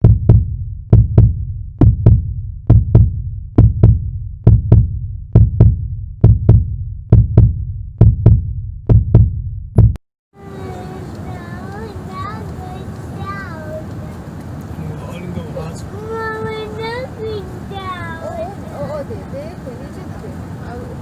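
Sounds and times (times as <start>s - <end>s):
heartbeat thumps: 0.0s - 10.0s.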